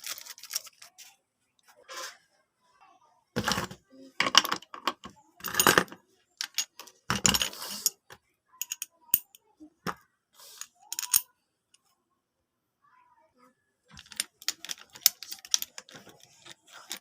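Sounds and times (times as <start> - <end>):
small hard objects clinking: 13.9 - 17.0.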